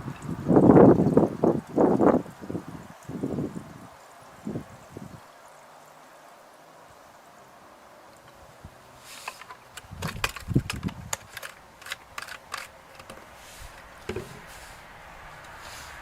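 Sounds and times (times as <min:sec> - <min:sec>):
plastic and metal handling clicks: 0:09.2 - 0:14.4.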